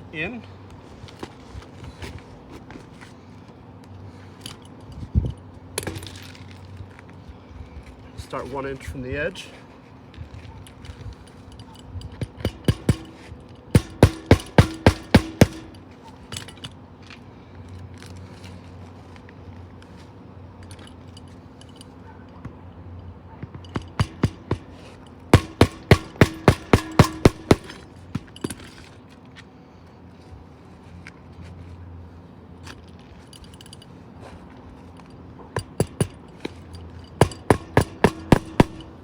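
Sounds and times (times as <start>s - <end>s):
hammer driving roofing nails: 12.2s - 15.8s, 23.6s - 28.8s, 35.6s - 36.6s, 37.2s - 39.0s.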